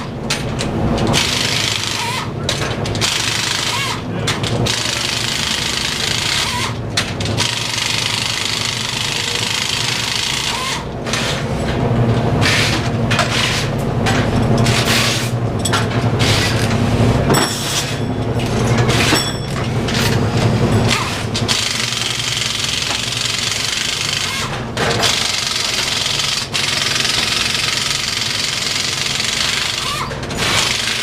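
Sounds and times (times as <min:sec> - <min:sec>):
mechanical hum: 0:00.0 - 0:31.0
clicks and clatter: 0:00.2 - 0:03.2.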